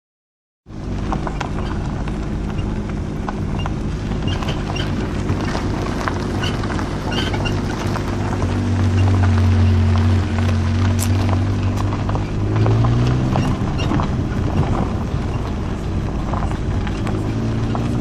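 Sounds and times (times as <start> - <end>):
vehicle running low hum: 0.7 - 18.0
short high squeaks: 3.5 - 5.7, 6.3 - 7.8, 13.2 - 14.1.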